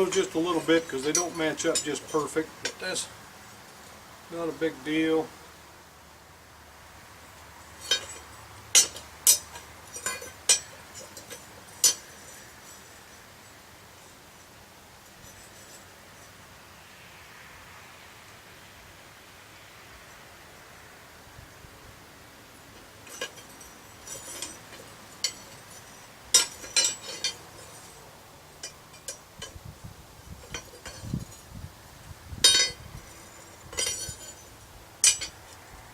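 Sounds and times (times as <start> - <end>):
metal tongs clinking: 0.0 - 3.1, 7.8 - 12.9, 23.0 - 29.6, 32.4 - 35.6
loud metal clanks: 7.8 - 12.2, 23.0 - 28.0, 32.4 - 35.5.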